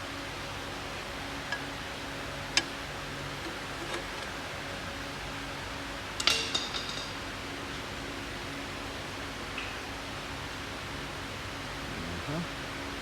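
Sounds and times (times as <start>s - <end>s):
steady hum and hiss: 0.0s - 13.0s
metal tools clinking: 2.6s - 4.5s.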